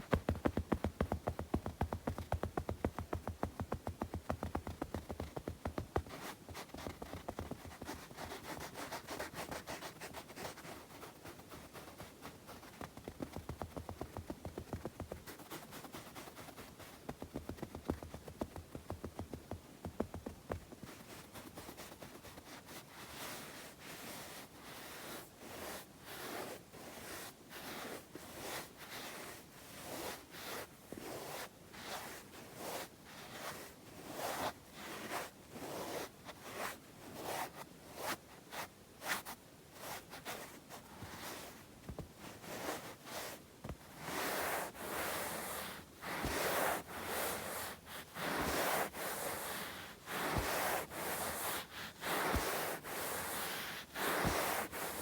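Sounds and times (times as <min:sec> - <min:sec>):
sharp finger taps: 0:00.0 - 0:06.1
palms rubbing together: 0:00.0 - 0:08.4, 0:41.0 - 0:55.0.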